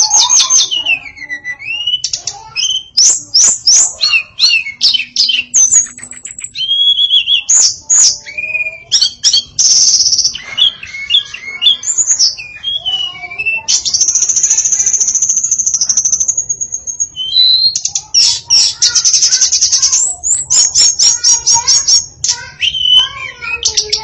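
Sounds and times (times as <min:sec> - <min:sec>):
songbird singing: 0:00.0 - 0:24.0.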